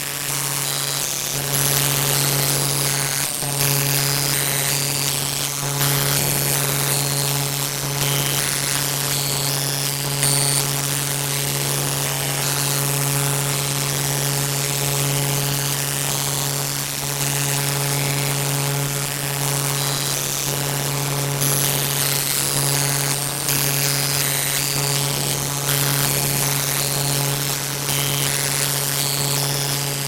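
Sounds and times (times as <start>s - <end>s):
low buzzing drone: 0.0s - 30.0s.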